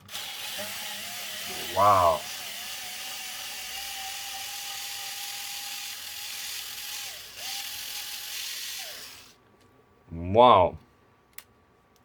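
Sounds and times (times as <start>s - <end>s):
electric screwdriver running: 0.0s - 9.4s.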